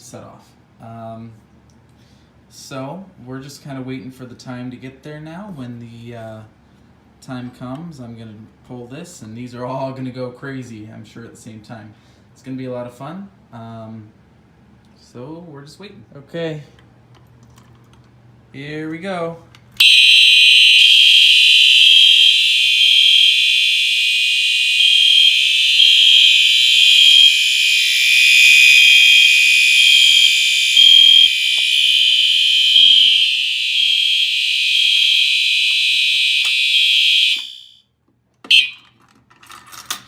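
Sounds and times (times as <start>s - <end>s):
fire alarm horns pulsing: 19.8s - 37.8s, 38.5s - 38.8s.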